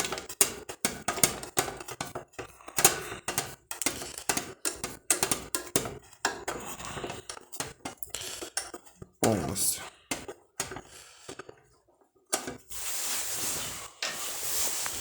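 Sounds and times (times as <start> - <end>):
metallic clicks and taps: 0.0 - 9.0.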